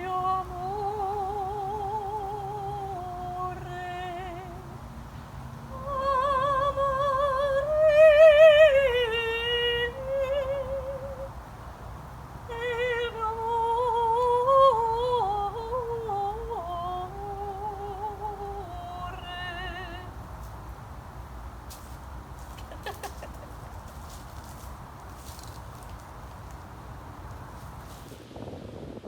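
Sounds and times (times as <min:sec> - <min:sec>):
woman singing with vibrato: 0:00.0 - 0:04.8, 0:05.7 - 0:11.4, 0:12.5 - 0:20.2.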